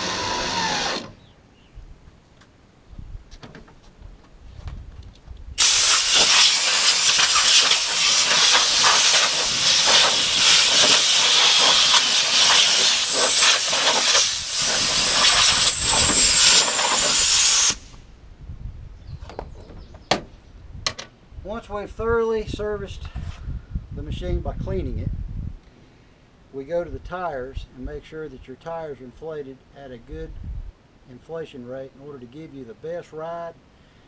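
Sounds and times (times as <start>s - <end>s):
pressure washer jet hissing: 5.6s - 18.0s.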